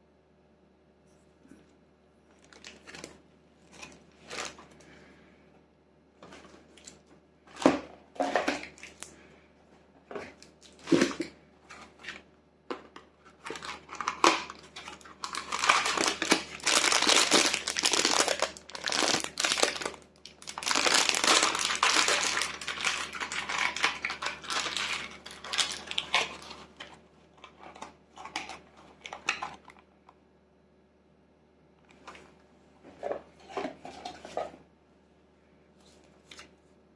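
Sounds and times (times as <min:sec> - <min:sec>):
wrapping crinkling and crumpling: 0:02.3 - 0:05.1, 0:10.1 - 0:29.9.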